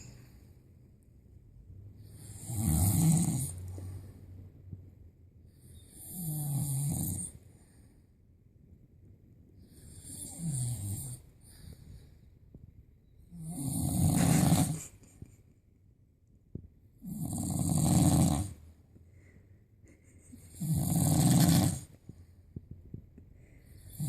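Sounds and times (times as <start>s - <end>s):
person snoring loudly: 2.2s - 3.6s, 13.4s - 14.8s, 17.0s - 18.6s, 20.5s - 21.9s.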